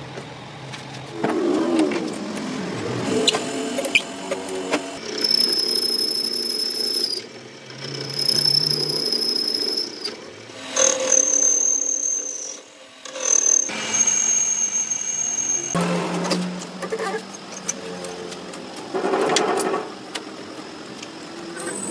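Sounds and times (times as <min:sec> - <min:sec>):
power tools whining: 0:00.8 - 0:21.9.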